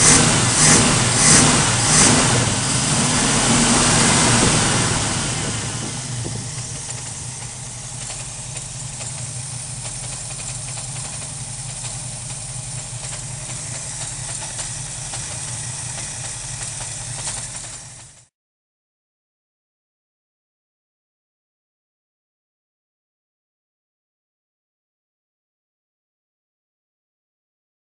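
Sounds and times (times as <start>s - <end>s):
engine idling with misfire: 0.0s - 18.3s.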